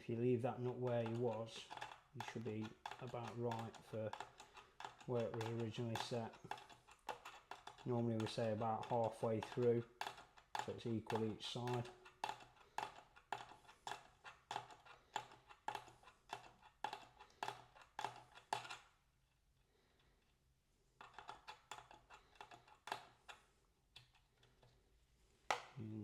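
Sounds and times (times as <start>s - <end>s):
spanner clicking on nut: 0.7s - 18.9s, 21.0s - 23.4s.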